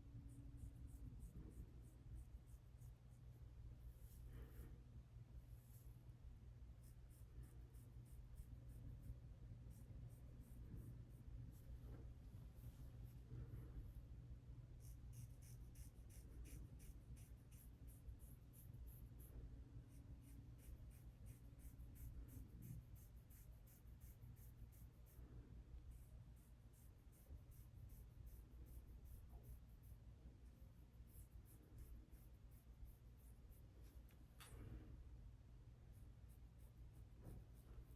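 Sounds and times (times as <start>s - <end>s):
razor scraping skin: 14.8s - 19.0s.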